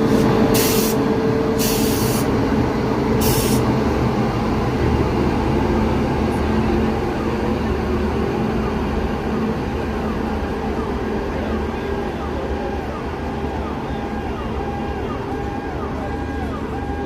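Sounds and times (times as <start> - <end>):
electric locomotive rumble and hum: 0.0 - 17.0
air hiss bursts: 0.5 - 1.0, 1.6 - 2.3, 3.2 - 3.6.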